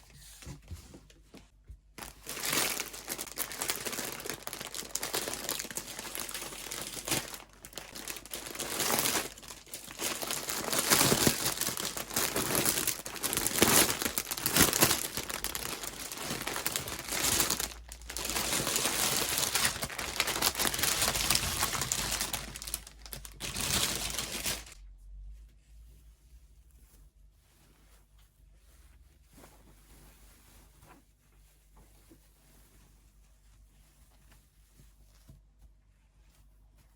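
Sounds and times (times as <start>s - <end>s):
packaging crinkling and tearing: 2.0s - 24.8s.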